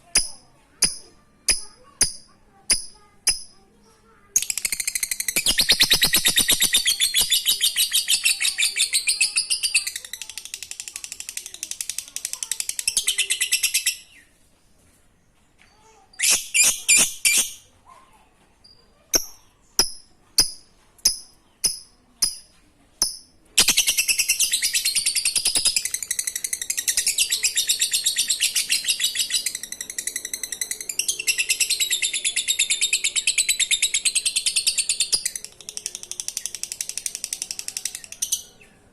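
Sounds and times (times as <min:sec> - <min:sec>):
bird chirps: 0:00.1 - 0:14.5, 0:18.6 - 0:38.9
lovebird chattering trill: 0:04.4 - 0:14.2, 0:19.1 - 0:38.6.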